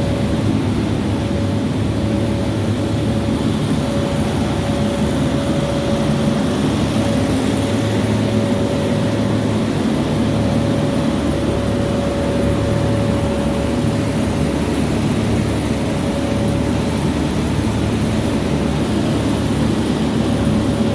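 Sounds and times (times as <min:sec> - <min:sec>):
machinery humming: 0:00.0 - 0:20.9
steady machine whine: 0:00.0 - 0:20.9.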